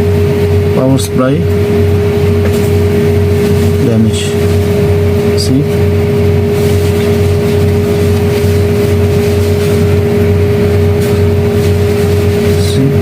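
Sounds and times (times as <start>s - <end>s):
mechanical humming drone: 0.0s - 13.0s.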